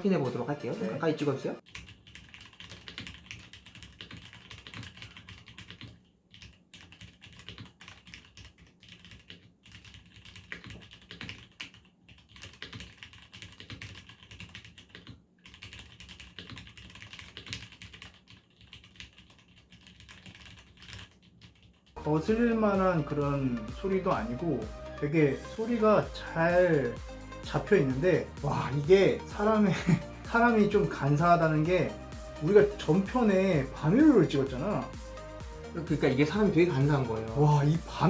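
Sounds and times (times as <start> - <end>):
mechanical keyboard typing: 1.6 - 22.0.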